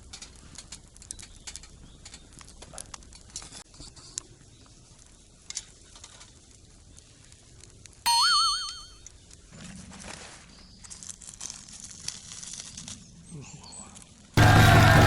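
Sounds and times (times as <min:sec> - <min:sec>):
campfire crackling: 0:04.1 - 0:08.0.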